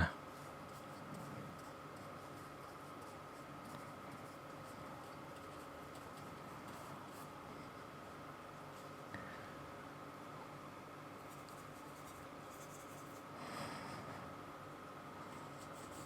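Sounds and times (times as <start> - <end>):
paintbrush scratchy strokes: 0.3 - 7.9, 11.2 - 13.3, 15.3 - 16.0.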